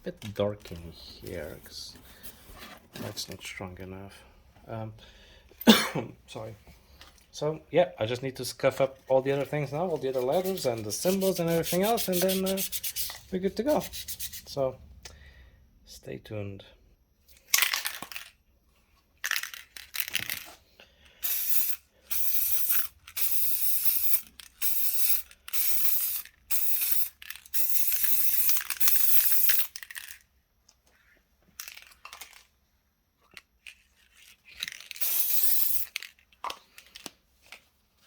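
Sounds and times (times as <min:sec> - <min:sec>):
aerosol can spraying: 0:10.2 - 0:14.5, 0:21.2 - 0:29.7, 0:35.0 - 0:36.0.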